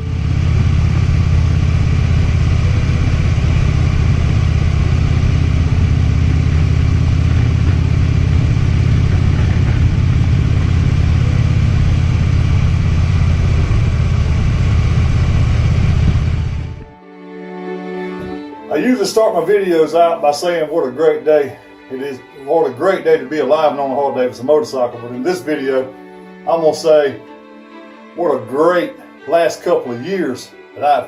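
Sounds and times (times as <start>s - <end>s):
motorcycle engine running: 0.0s - 16.9s.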